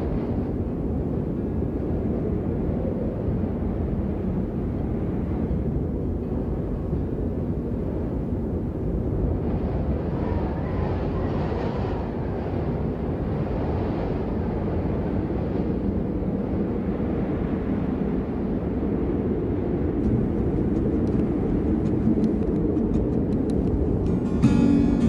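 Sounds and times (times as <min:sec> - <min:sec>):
low rumbling ambience: 0:18.1 - 0:25.0.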